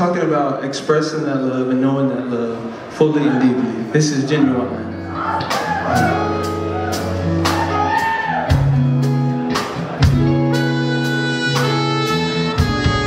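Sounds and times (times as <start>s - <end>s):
bass notes: 4.3s - 13.0s.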